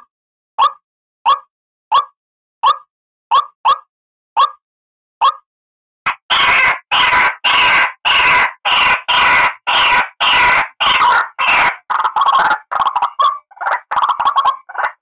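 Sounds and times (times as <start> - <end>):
bird croaking call: 6.1 - 15.0.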